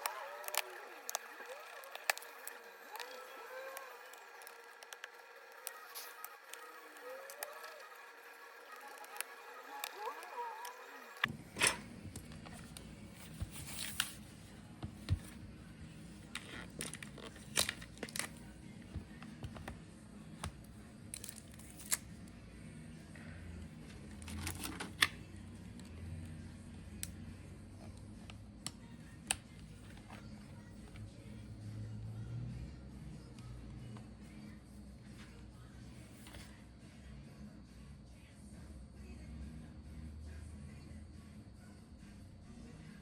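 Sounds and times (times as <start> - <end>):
faint background music: 0.0 - 43.0
laptop parts clicking and tapping: 1.8 - 3.1.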